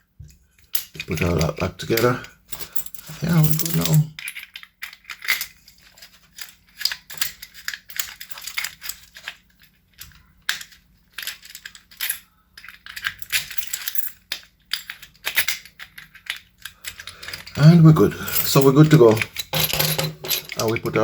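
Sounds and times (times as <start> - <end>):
metallic clicks of lock parts: 0.6 - 21.0.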